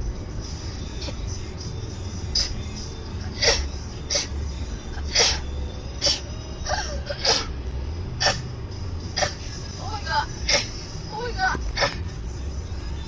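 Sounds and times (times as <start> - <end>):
woman sneezing: 3.4 - 4.3, 5.1 - 5.4, 6.0 - 7.5, 10.5 - 10.8.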